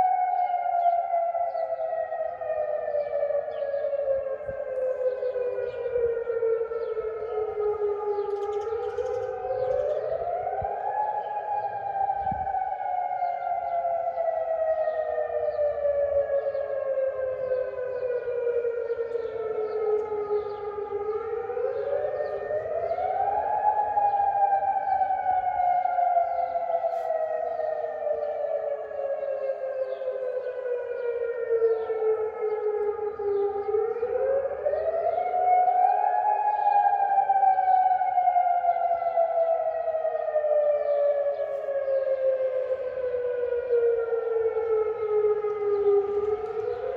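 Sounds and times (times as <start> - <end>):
warning sirens wailing: 0.0 - 46.9.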